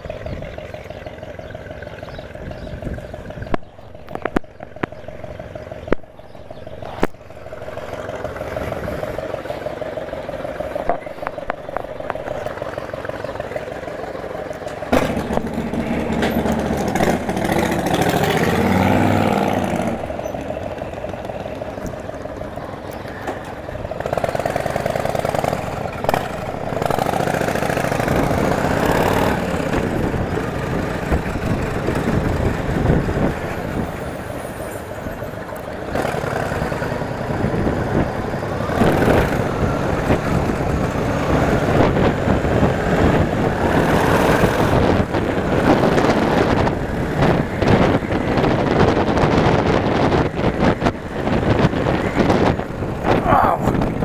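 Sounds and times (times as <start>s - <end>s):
motorcycle engine running: 0.0s - 54.0s
wind rushing over microphone: 23.7s - 35.2s, 35.8s - 54.0s.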